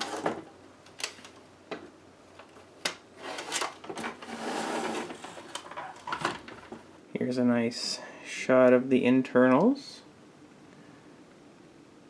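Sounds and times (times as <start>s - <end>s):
plastic scraping rustle: 0.0s - 1.4s, 2.4s - 7.0s.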